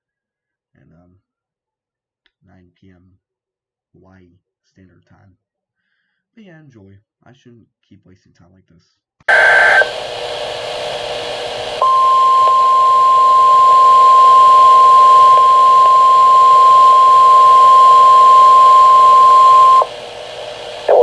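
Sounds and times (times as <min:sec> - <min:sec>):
radio static: 0:09.3 - 0:21.0
single-pitch warning alarm tone: 0:09.3 - 0:21.0
alert data tones: 0:11.8 - 0:21.0.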